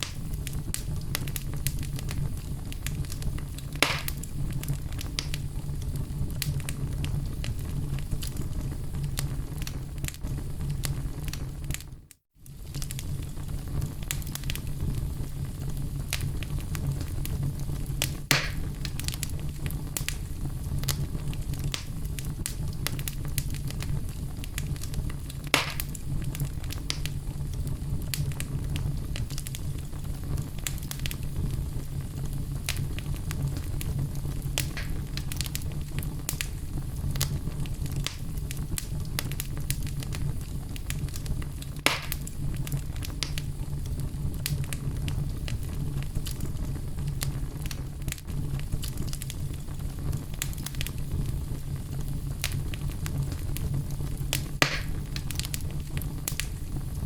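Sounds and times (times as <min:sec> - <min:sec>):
fire pops: 0:00.0 - 0:57.0
wood fire crackling: 0:00.0 - 0:57.0.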